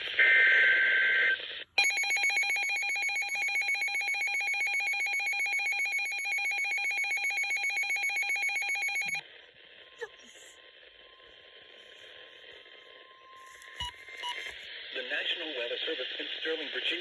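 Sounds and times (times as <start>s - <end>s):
pulsing electronic alarm tone: 1.8s - 14.5s.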